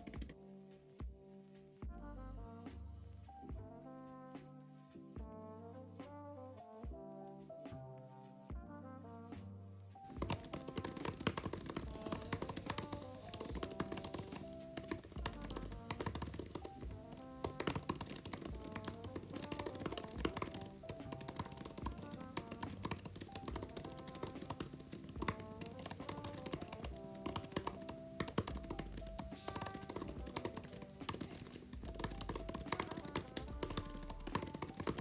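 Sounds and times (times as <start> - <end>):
fast keyboard typing: 0.0 - 0.4, 10.1 - 35.0
background music: 0.0 - 35.0.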